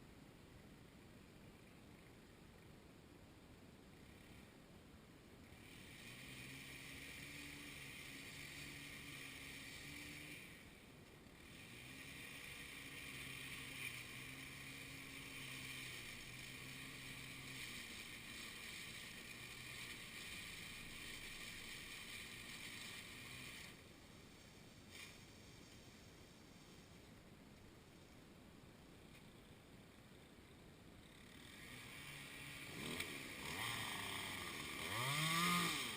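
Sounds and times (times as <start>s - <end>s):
faint engine running: 3.8s - 35.9s
hiss: 11.6s - 27.1s.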